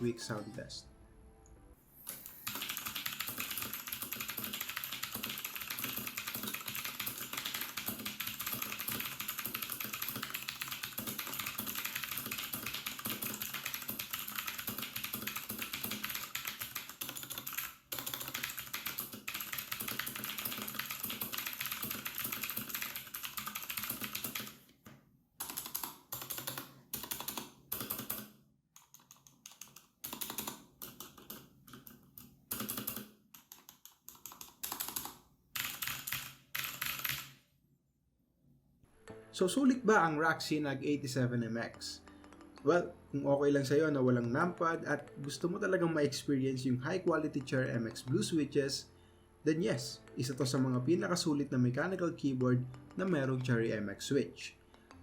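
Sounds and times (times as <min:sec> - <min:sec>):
mechanical keyboard typing: 0:02.1 - 0:24.6, 0:25.4 - 0:37.4, 0:42.0 - 0:42.7.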